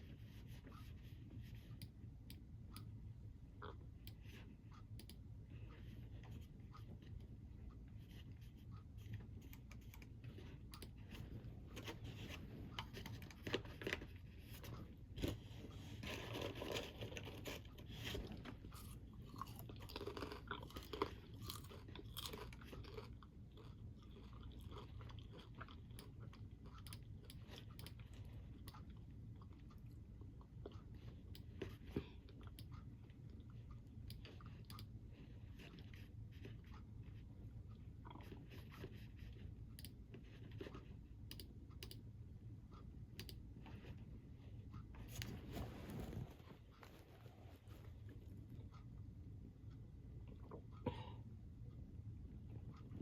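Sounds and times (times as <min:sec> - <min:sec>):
person chewing crunchy snack: 0:16.0 - 0:30.8.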